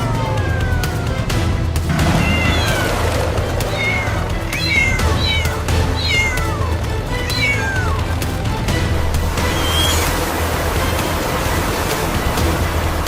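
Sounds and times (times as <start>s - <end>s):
cat meowing: 0.0s - 1.3s, 1.9s - 8.1s, 9.5s - 10.1s
background music with low bass: 0.0s - 13.0s.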